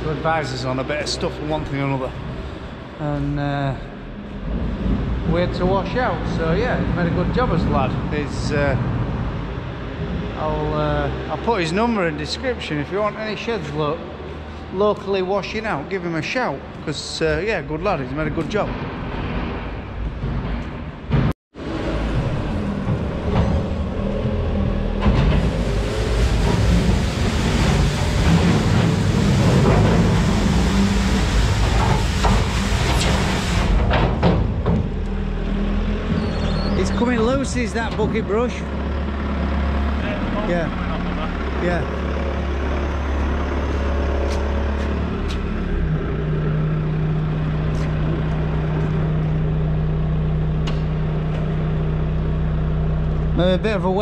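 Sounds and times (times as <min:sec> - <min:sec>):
engine running: 0:16.8 - 0:54.0.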